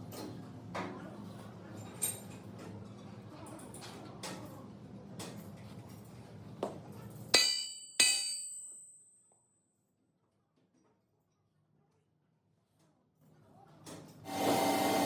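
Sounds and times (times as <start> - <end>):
sharp metallic clangs ringing: 7.4 - 9.0.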